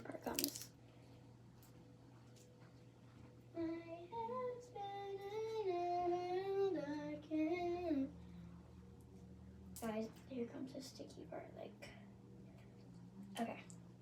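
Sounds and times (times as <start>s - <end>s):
girl singing: 3.5s - 8.2s.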